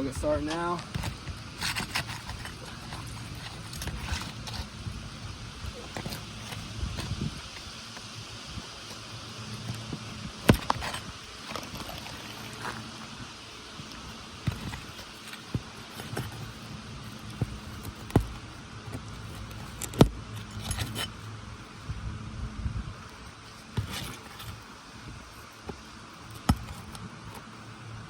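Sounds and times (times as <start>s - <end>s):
metal clinks: 13.8s - 21.3s.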